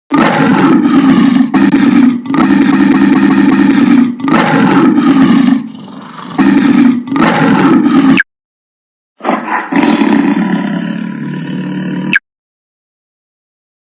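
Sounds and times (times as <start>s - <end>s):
lion roaring: 0.1s - 8.2s, 9.2s - 12.2s.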